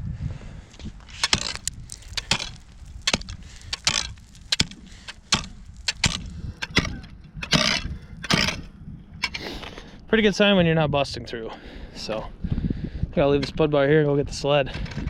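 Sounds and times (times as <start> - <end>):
steel bar chopping ice: 1.2 - 8.6.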